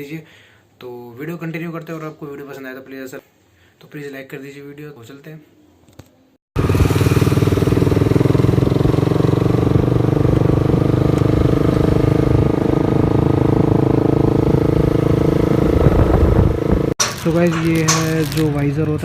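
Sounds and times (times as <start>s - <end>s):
motorcycle engine running steadily: 6.6s - 18.4s.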